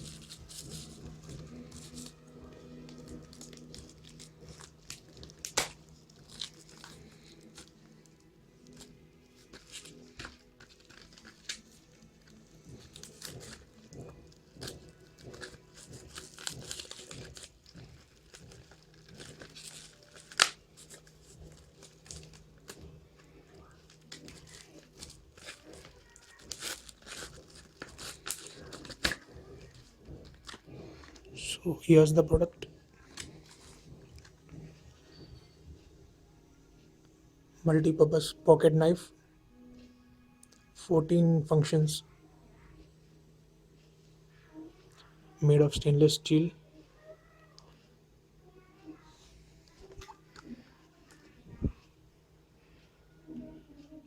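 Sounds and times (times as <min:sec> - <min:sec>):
plastic wrapper tearing and crinkling: 0:00.0 - 0:31.3, 0:33.0 - 0:34.6.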